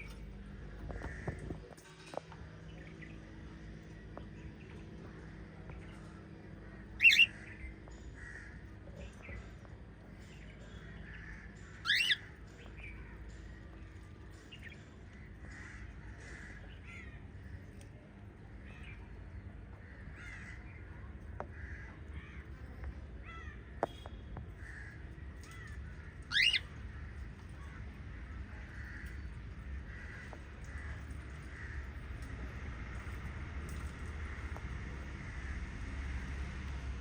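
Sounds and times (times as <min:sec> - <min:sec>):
steady low hum: 0:00.0 - 0:37.0
parrots chirping and squawking: 0:06.7 - 0:08.6, 0:11.1 - 0:13.6, 0:24.6 - 0:35.6.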